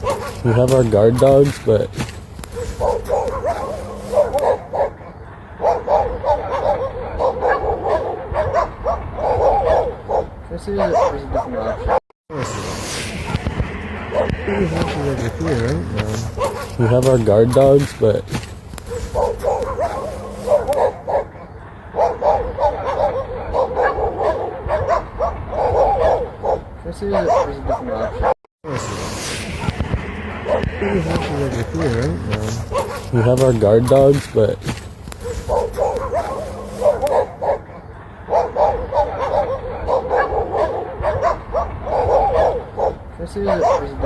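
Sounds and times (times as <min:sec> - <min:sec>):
animals calling: 0:00.0 - 0:12.0, 0:13.3 - 0:28.3, 0:29.6 - 0:44.0
dogs yapping: 0:00.0 - 0:12.0, 0:16.0 - 0:28.4, 0:30.4 - 0:44.0.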